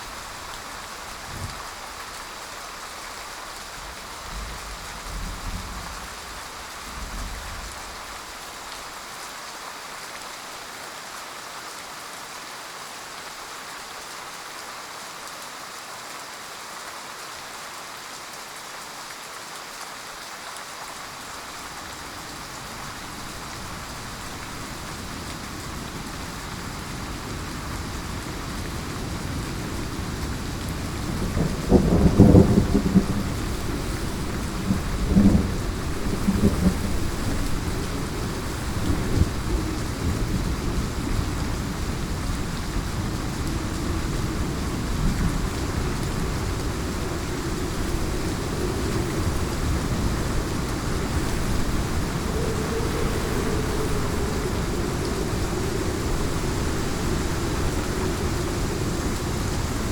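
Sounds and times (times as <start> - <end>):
heavy rain falling: 0.0 - 59.9
thunder rumbling: 21.4 - 59.9.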